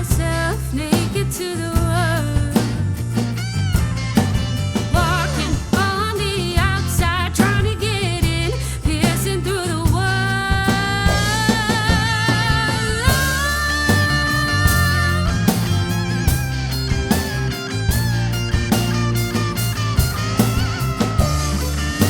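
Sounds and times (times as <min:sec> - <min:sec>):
live rock band playing: 0:00.0 - 0:22.0
person singing: 0:04.9 - 0:15.9.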